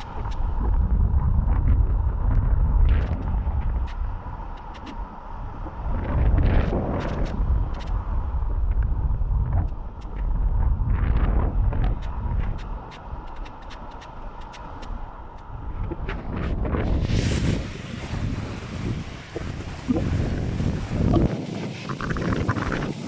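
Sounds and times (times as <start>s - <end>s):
crackles: 0.0s - 17.6s
wind buffeting microphone: 0.0s - 23.0s.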